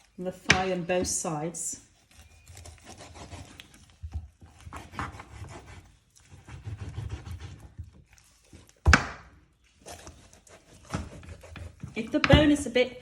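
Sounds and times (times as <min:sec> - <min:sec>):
handling of meat: 0:01.9 - 0:06.7, 0:07.6 - 0:12.0
knife cutting raw chicken: 0:01.9 - 0:12.6.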